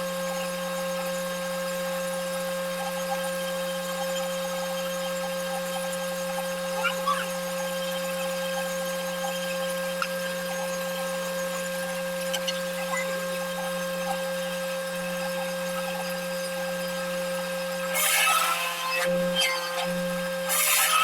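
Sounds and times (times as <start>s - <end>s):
woodworking machine motor humming: 10.9s - 21.0s
cutter cutting into wood: 17.7s - 21.0s.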